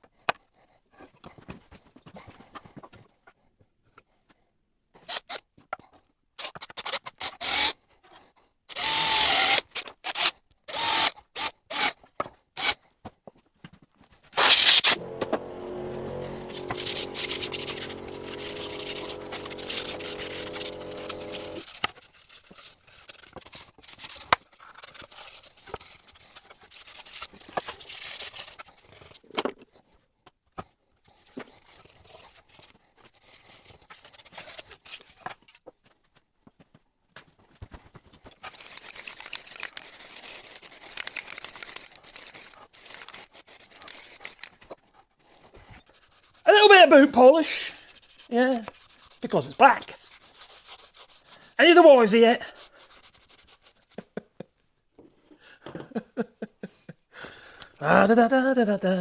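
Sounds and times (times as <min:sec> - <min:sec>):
scraping and rubbing wood: 0:14.4 - 0:29.2, 0:38.4 - 0:44.7.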